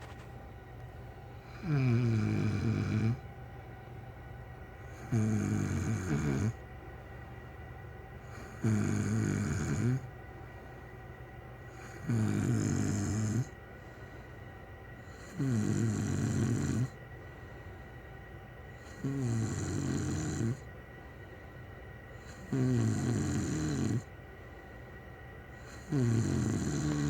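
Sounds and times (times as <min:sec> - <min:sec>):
person snoring loudly: 0:01.5 - 0:03.2, 0:05.0 - 0:06.6, 0:08.4 - 0:10.1, 0:11.8 - 0:13.5, 0:15.1 - 0:16.9, 0:18.8 - 0:20.6, 0:22.2 - 0:24.1, 0:25.7 - 0:27.0.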